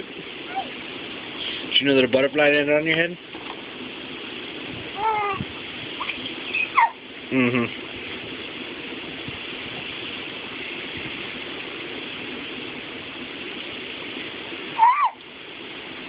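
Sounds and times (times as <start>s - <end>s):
background hiss: 0.0s - 16.0s
baby squealing: 0.5s - 0.8s, 5.0s - 5.4s, 6.0s - 7.0s, 14.8s - 15.2s.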